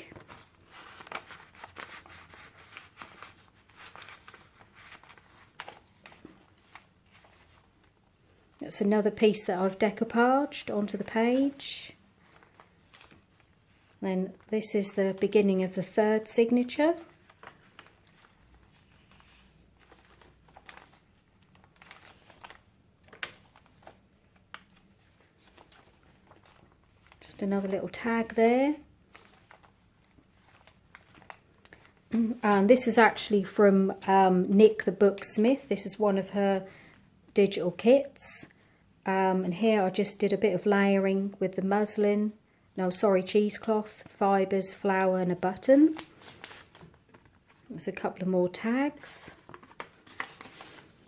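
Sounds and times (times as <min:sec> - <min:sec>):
paper taps and crinkles: 0:00.0 - 0:08.1, 0:12.2 - 0:14.0, 0:17.0 - 0:28.3, 0:29.1 - 0:32.7, 0:45.8 - 0:47.7, 0:49.0 - 0:51.0
paper rustling: 0:00.0 - 0:08.6, 0:10.6 - 0:15.3, 0:16.7 - 0:32.8, 0:45.0 - 0:47.7, 0:48.9 - 0:51.0.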